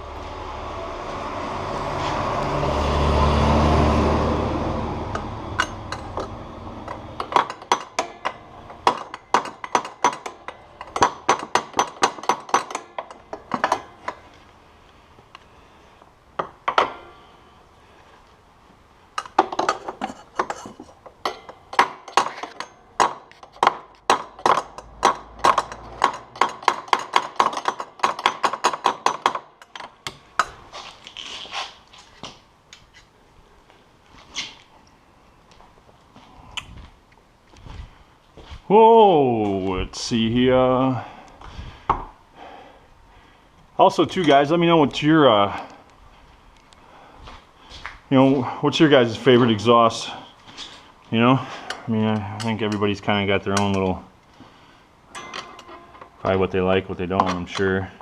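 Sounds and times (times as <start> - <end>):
hand tools clicking on metal: 5.1 - 14.2, 19.2 - 30.6, 51.7 - 54.0.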